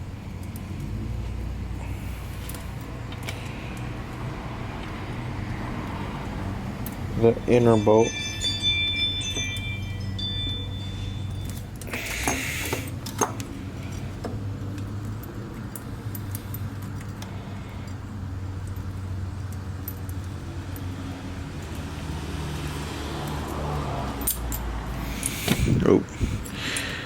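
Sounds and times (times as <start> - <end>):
steady low hum: 0.0 - 21.5
metal tools clinking: 6.9 - 14.1.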